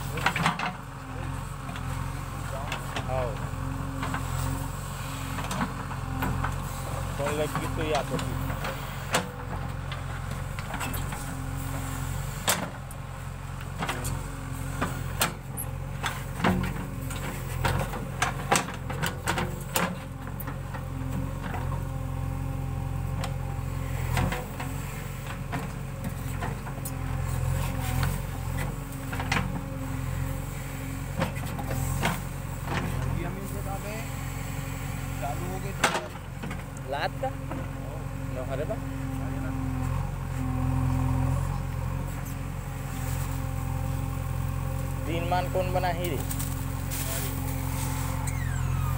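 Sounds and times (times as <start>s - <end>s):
diesel engine running: 0.0s - 48.9s
sharp clanks and knocks: 0.1s - 0.8s, 16.0s - 21.8s, 27.6s - 29.7s, 35.7s - 36.8s.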